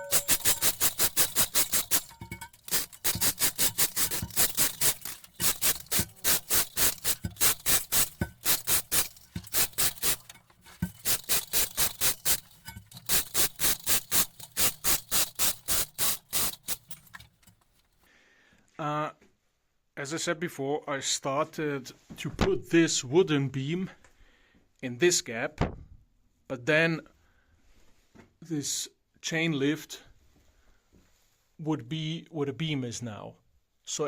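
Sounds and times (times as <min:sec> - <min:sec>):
hand saw cutting wood: 0:00.0 - 0:17.1.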